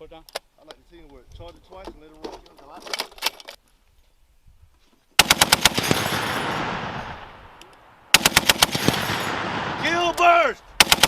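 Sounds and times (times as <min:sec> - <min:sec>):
machine gun burst: 0:05.2 - 0:07.0, 0:08.2 - 0:09.7, 0:10.8 - 0:11.0
gunfire echo: 0:05.2 - 0:11.0.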